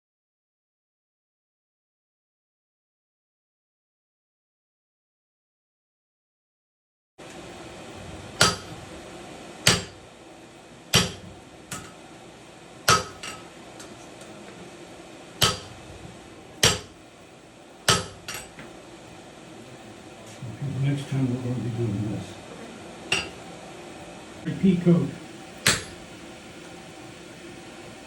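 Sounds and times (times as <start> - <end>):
hammer striking hot steel: 8.3 - 8.8, 9.6 - 10.0, 10.9 - 12.0, 12.8 - 13.5, 15.4 - 15.8, 16.6 - 17.0, 17.8 - 18.6, 23.1 - 23.4, 25.6 - 26.1.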